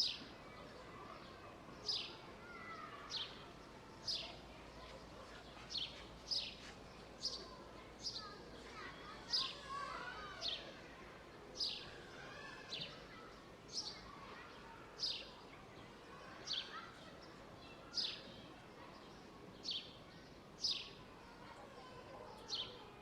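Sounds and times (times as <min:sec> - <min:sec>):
outdoor background noise: 0:00.0 - 0:23.0.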